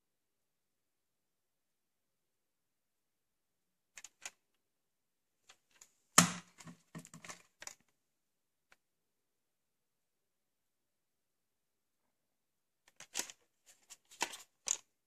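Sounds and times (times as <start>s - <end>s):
plastic tape cases clicking: 12.9s - 13.4s.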